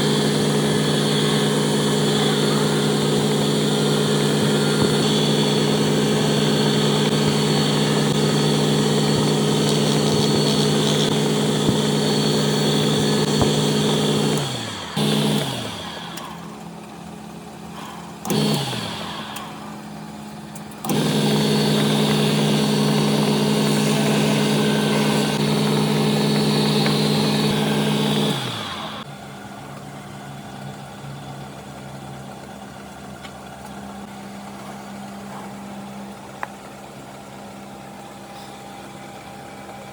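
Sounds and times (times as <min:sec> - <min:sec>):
power tool motor spinning down: 0:00.0 - 0:16.8, 0:18.2 - 0:20.2, 0:20.8 - 0:29.1.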